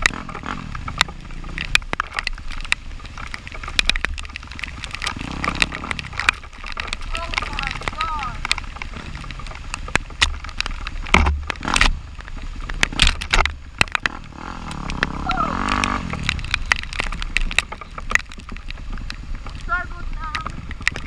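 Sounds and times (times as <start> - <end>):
sharp knocks and crackles: 0.0 - 21.0
off-road vehicle engine revving: 5.0 - 6.2, 14.0 - 16.7.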